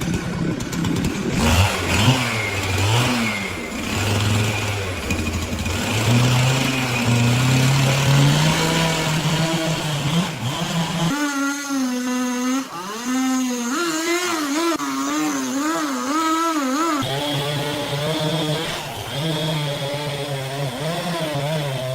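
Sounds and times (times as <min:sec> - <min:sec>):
small engine running: 0:00.0 - 0:21.9.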